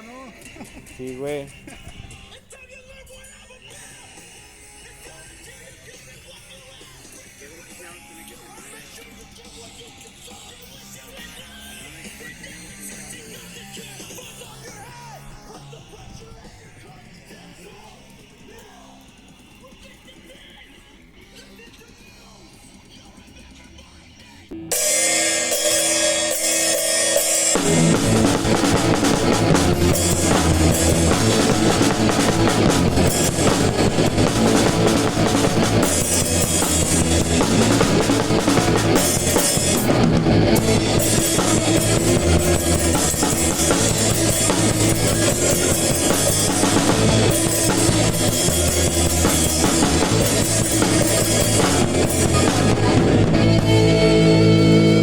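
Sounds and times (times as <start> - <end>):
drum kit: 0.0 - 2.6, 3.7 - 55.0
electric guitar: 24.5 - 55.0
ska band playing: 24.5 - 55.0.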